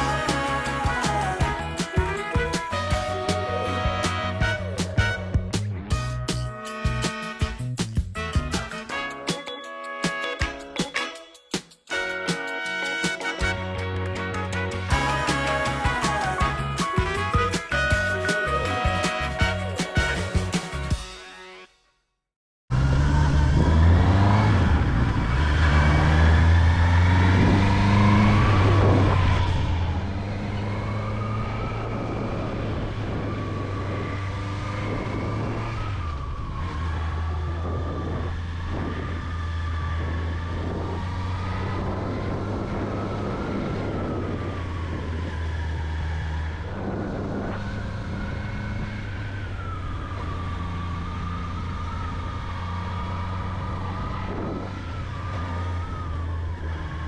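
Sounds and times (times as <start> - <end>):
motorcycle engine accelerating: 22.7 - 57.0.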